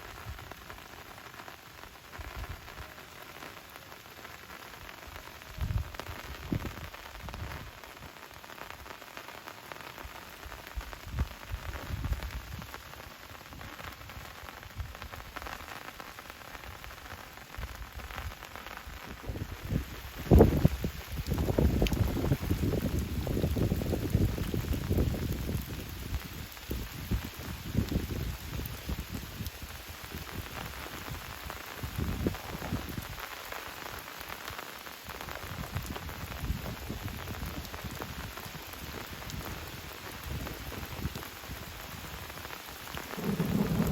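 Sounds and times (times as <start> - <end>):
rain pattering: 0.0 - 43.9
low thuds: 43.0 - 43.9.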